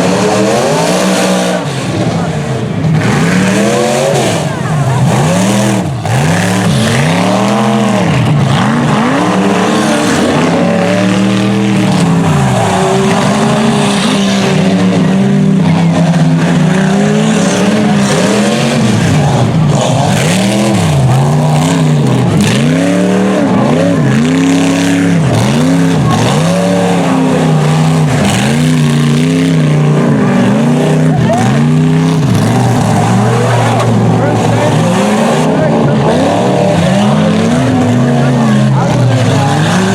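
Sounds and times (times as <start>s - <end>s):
truck engine revving: 0.0s - 39.9s.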